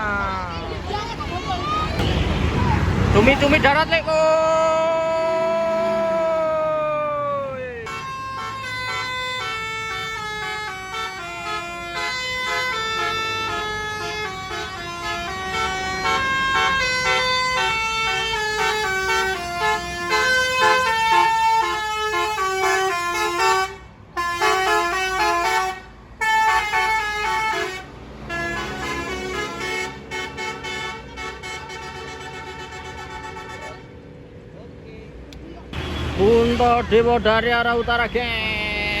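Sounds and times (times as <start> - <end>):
bus horn playing a multi-note tune: 7.8 - 34.0, 35.8 - 37.1.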